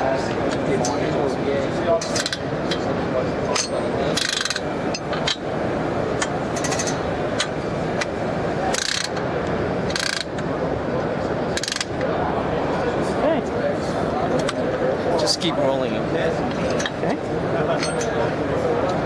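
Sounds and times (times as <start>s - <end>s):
steady mechanical noise: 0.0s - 19.0s
ratcheting and clicking: 9.9s - 10.4s.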